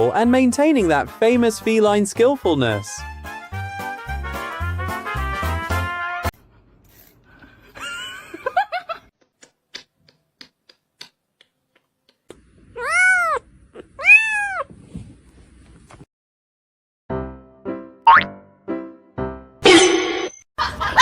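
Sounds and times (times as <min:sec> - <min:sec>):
cat meowing: 0:12.8 - 0:14.7.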